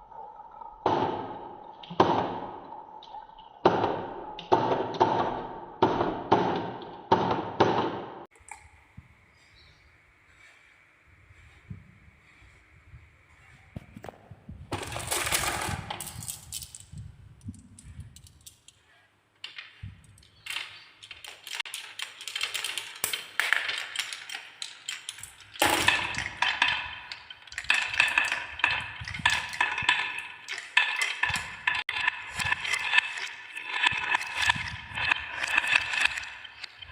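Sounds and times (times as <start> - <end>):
marbles clattering down track: 14.7 - 18.8, 19.4 - 36.9.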